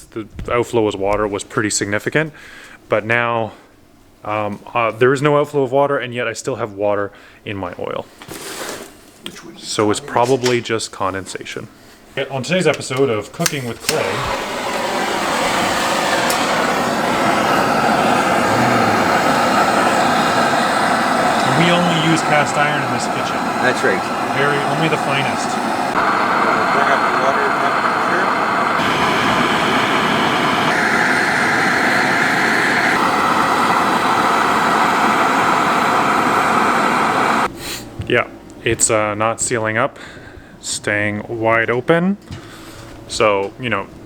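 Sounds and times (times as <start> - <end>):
gas burner hissing: 9.6 - 11.4, 12.4 - 37.9.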